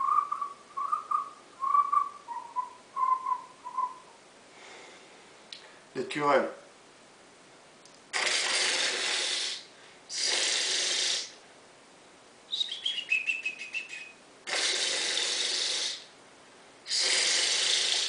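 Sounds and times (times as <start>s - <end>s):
person hissing breathily: 8.1s - 11.4s, 14.5s - 16.1s, 16.9s - 18.0s.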